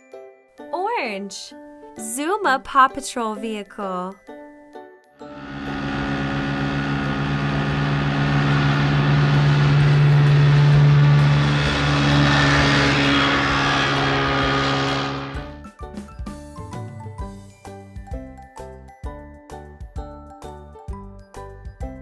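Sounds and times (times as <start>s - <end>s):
hovercraft engine drone: 5.3s - 15.5s.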